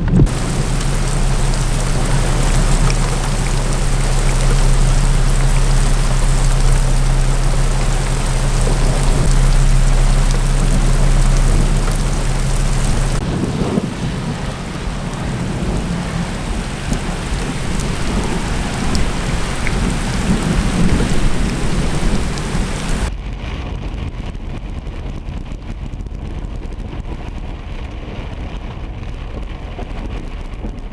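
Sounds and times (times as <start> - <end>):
heavy rain pouring: 0.0 - 23.1
steady low hum: 0.0 - 23.1
thunder rumbling: 0.0 - 23.1.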